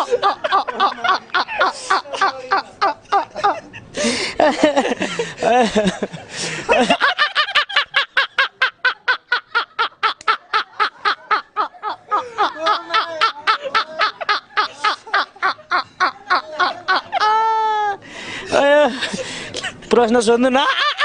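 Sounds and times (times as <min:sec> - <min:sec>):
person laughing hard: 0:00.0 - 0:03.8, 0:04.4 - 0:18.0, 0:20.6 - 0:21.0.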